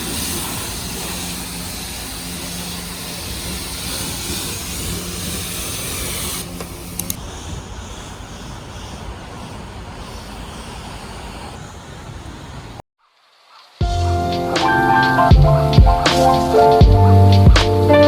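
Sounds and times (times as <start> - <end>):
high-pressure spray wand hissing: 0.0 - 12.8
pump humming: 0.0 - 12.8
sharp clicks: 5.9 - 7.3.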